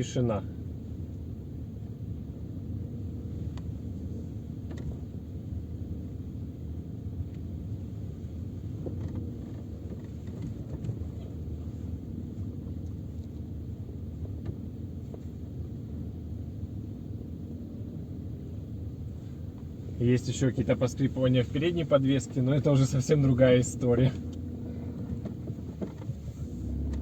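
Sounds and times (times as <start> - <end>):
car cabin road rumble: 0.0 - 27.0.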